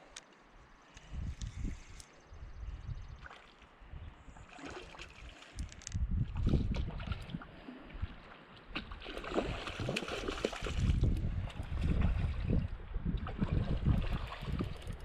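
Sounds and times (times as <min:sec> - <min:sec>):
faint clicks: 0:00.1 - 0:02.2
wind buffeting microphone: 0:01.0 - 0:04.5, 0:05.5 - 0:08.2, 0:09.3 - 0:15.0
water lapping and splashing: 0:03.2 - 0:15.0.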